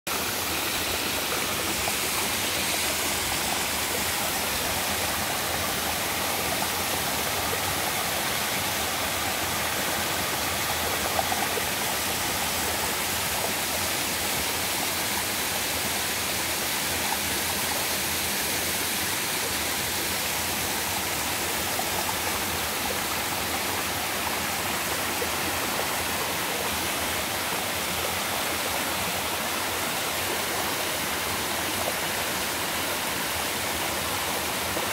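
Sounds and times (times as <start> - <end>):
waterfall rushing: 0.1 - 16.7.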